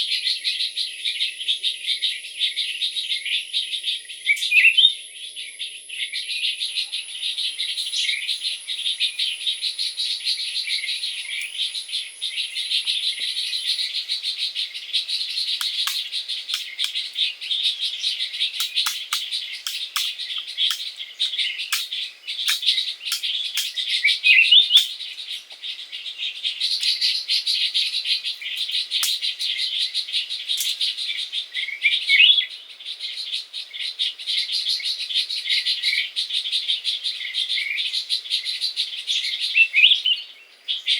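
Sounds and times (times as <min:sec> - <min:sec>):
birds chirping and calling: 0:06.8 - 0:40.9
short ticks: 0:15.6 - 0:17.2, 0:18.6 - 0:23.8, 0:28.6 - 0:29.3.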